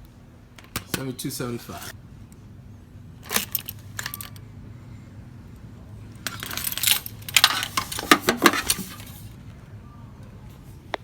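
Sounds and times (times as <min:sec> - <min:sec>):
keys jangling: 0:03.3 - 0:04.4, 0:06.3 - 0:07.7.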